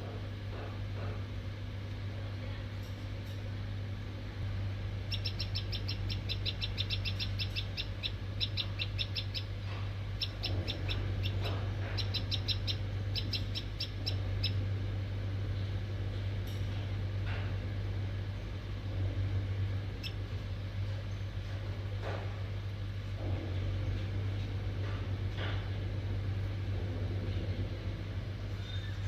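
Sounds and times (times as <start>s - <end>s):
steady low hum: 0.0s - 29.0s
small birds chirping: 5.0s - 14.7s, 19.9s - 20.3s.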